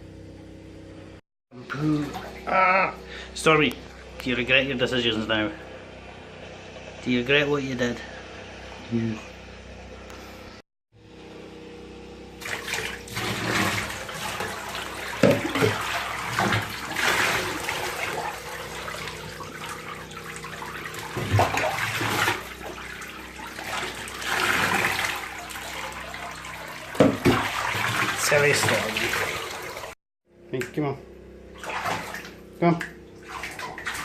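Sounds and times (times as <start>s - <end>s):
running water splashing in bath: 1.9s - 2.4s, 12.4s - 30.0s, 31.5s - 32.4s, 33.1s - 34.0s.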